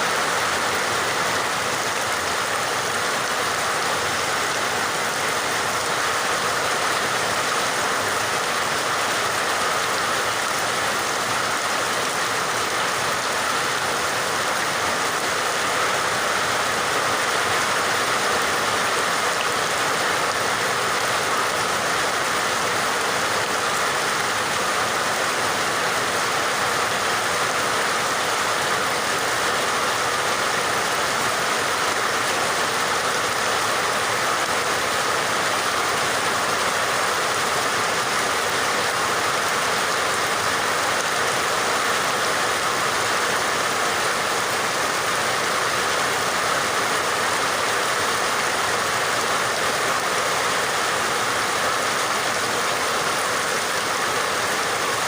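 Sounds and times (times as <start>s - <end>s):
steady rain hiss: 0.0s - 55.0s.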